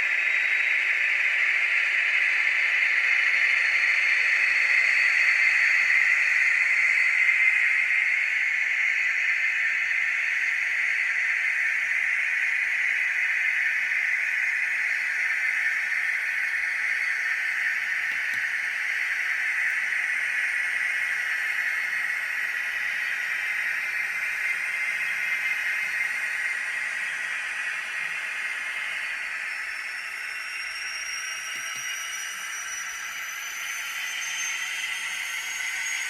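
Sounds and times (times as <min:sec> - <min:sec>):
faint high whine: 0:00.0 - 0:36.0
model train engine sound from speaker: 0:00.0 - 0:36.0.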